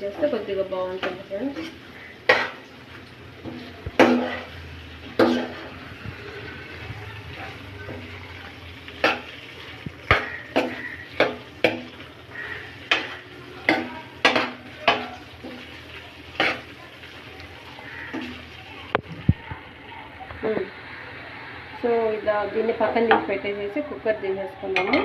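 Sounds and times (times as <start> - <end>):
frying sizzle: 0.0 - 25.0
spoon knocking and scraping pan: 0.9 - 2.7, 3.4 - 5.8, 7.4 - 16.8.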